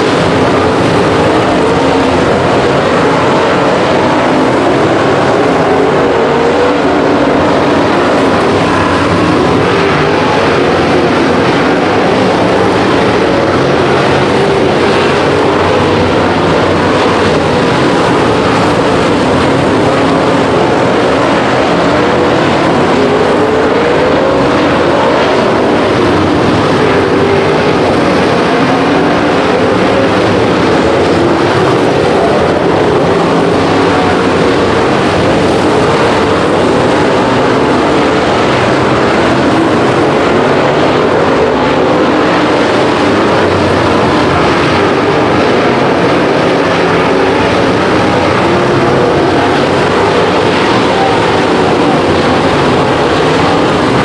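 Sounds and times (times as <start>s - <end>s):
race car engines at speed: 0.0s - 54.0s.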